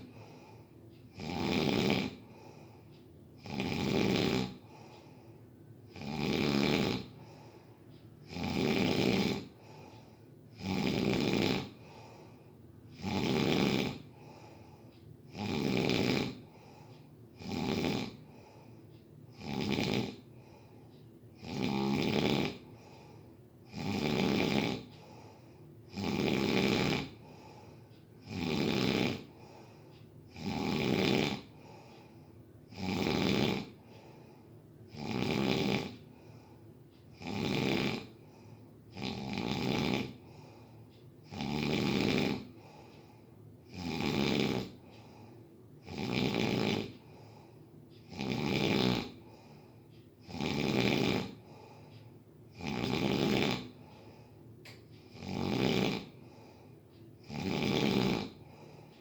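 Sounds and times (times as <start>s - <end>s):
loud snoring: 0.0s - 2.8s, 3.4s - 5.1s, 5.9s - 7.6s, 8.2s - 12.2s, 12.9s - 14.6s, 15.3s - 16.8s, 17.4s - 18.6s, 19.3s - 20.6s, 21.4s - 25.3s, 25.9s - 27.6s, 28.2s - 31.9s, 32.7s - 34.2s, 34.9s - 36.4s, 37.1s - 42.9s, 43.6s - 45.2s, 45.8s - 47.4s, 48.0s - 49.6s, 50.2s - 51.8s, 52.5s - 54.2s, 55.0s - 56.6s, 57.2s - 58.8s
quiet breathing: 0.0s - 59.0s.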